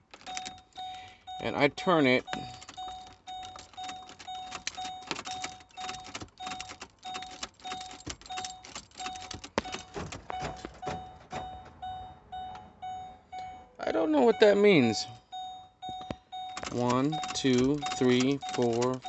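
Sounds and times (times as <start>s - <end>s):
ignition key clicking: 0.0s - 1.0s, 2.2s - 11.8s, 15.9s - 19.0s
car warning chime dinging: 0.0s - 19.0s.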